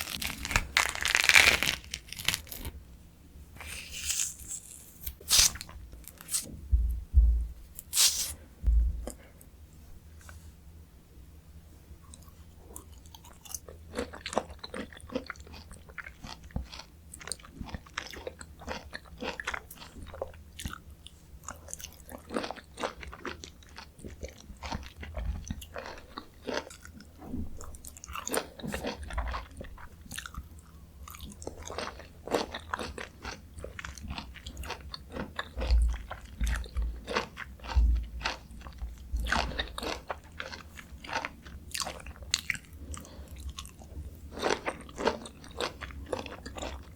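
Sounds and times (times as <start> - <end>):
soft low thumps: 6.5 - 7.8, 8.6 - 9.2
squelching and smacking mouth sounds: 7.8 - 9.2
wet chewing of fruit: 12.1 - 46.9.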